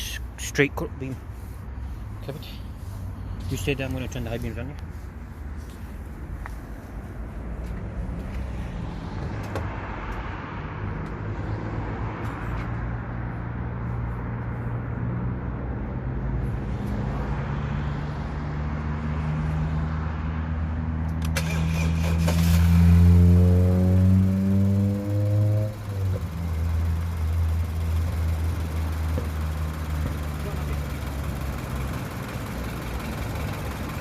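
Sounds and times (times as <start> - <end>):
car engine idling: 25.7 - 34.0.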